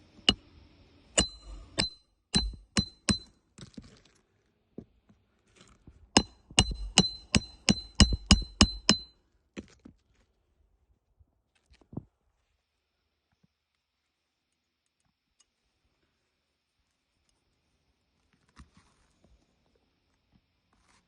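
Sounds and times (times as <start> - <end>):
hammer striking metal: 1.2 - 3.3, 6.2 - 9.1.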